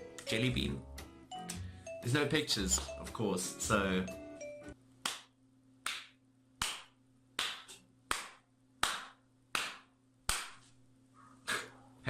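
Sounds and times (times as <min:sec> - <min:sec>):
sharp clap-like strikes: 0:05.0 - 0:10.7.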